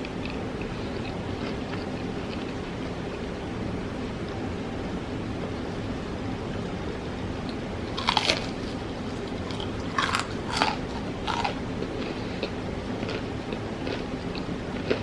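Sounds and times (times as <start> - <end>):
faint chewing clicks: 0.0 - 3.3, 7.5 - 15.0
steady low hum: 0.0 - 15.0
crunchy bites of fried chicken: 8.0 - 15.0.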